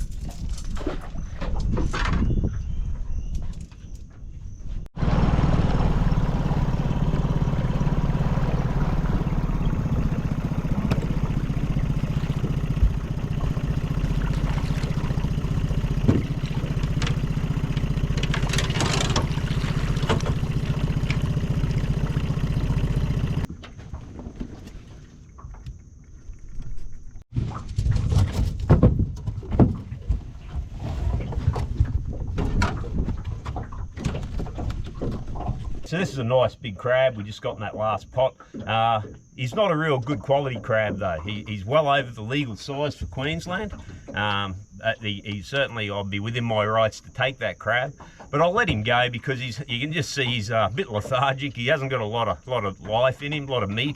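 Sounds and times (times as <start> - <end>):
outboard motor running: 5.0 - 26.0, 43.0 - 44.8, 47.9 - 53.9
knocks and rattles: 6.0 - 24.5.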